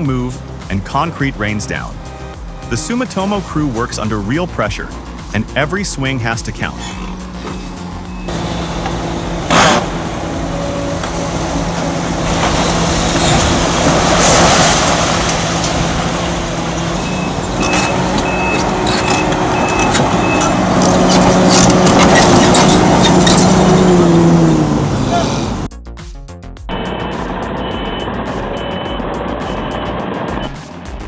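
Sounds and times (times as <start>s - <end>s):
diesel engine under load: 0.0s - 25.7s
reversing alarm beeping: 6.9s - 21.4s, 27.6s - 30.6s.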